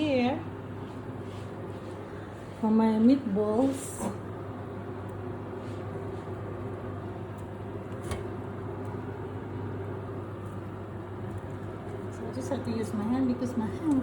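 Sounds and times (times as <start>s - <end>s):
kitchen appliance humming: 0.0s - 14.0s.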